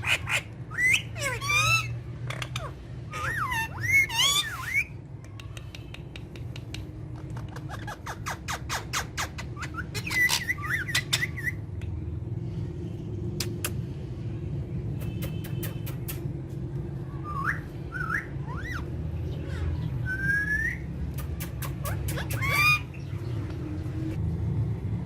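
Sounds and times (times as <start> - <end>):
parrots squawking: 0.0 - 5.0, 7.1 - 11.6, 17.1 - 23.2
parrot clicks and chirps: 5.2 - 7.8, 21.1 - 22.8.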